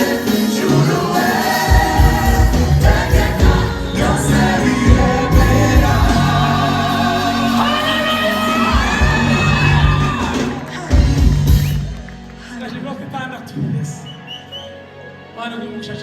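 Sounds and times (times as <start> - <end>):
gospel choir singing: 0.0 - 11.7
live band with bass and drums: 0.0 - 12.4.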